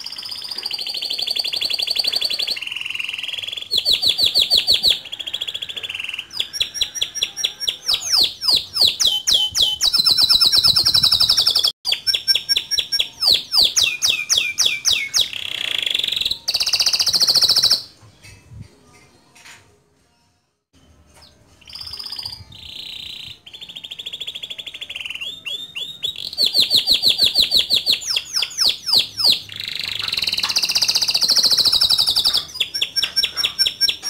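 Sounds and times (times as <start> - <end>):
canary singing trills: 0.0 - 18.6, 21.2 - 34.0.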